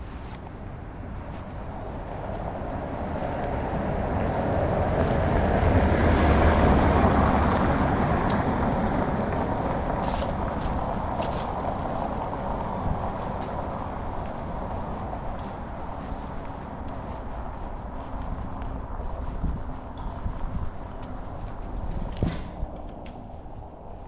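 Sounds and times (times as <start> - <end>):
vehicle driving past: 1.9 - 16.0.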